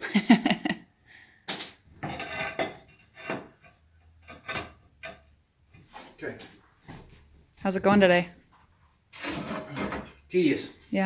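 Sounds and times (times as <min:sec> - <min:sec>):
hard objects clattering: 0:01.5 - 0:05.4.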